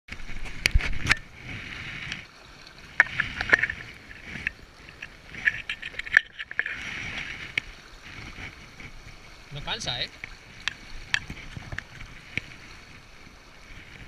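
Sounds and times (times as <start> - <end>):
river water running: 0.1 - 14.0.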